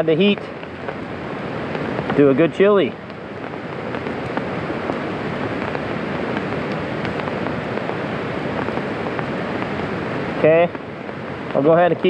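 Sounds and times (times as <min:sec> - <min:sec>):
steady rain: 0:00.0 - 0:12.0
wind: 0:00.0 - 0:12.0.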